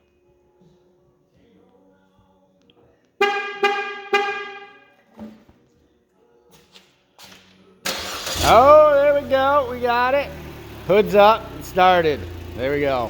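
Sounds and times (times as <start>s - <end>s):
car horn chirping: 3.2s - 5.0s.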